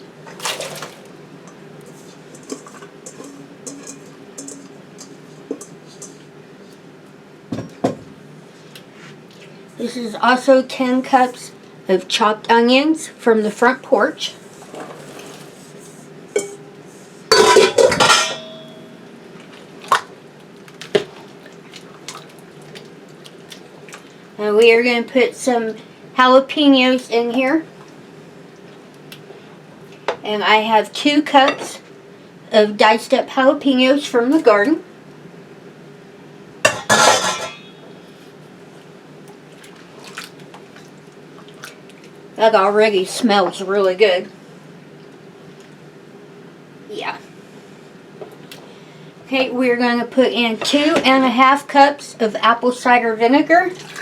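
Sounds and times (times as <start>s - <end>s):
low steady hum: 0.0s - 54.0s
kitchenware clattering against pot: 2.3s - 6.2s, 16.4s - 16.6s, 17.3s - 18.7s, 36.7s - 37.8s.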